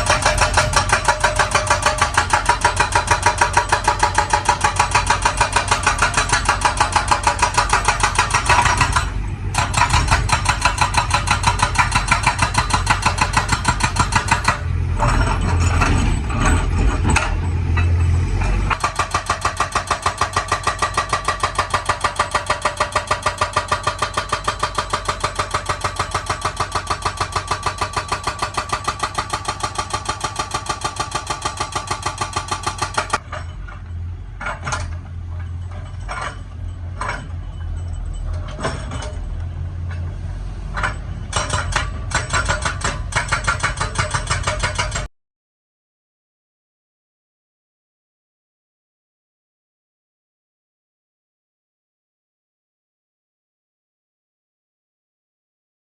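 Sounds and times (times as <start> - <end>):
hydraulic breaker hammering rock: 0.0 - 40.1, 40.8 - 45.1
excavator engine: 0.0 - 45.1.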